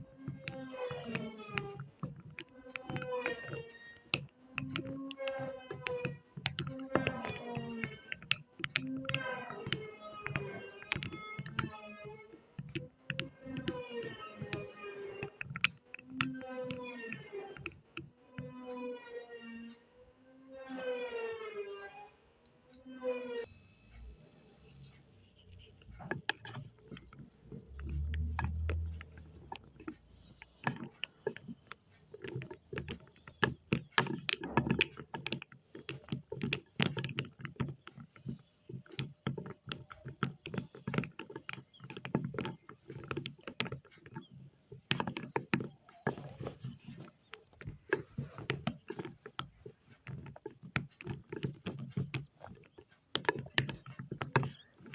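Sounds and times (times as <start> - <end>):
wet chalk crackling: 0.0 - 18.7, 24.7 - 54.9.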